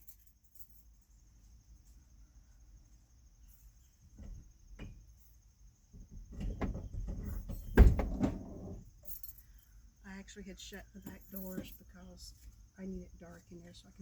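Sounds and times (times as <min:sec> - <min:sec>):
van door rattling and knocking: 0:05.9 - 0:08.9
loud thud: 0:06.0 - 0:08.7.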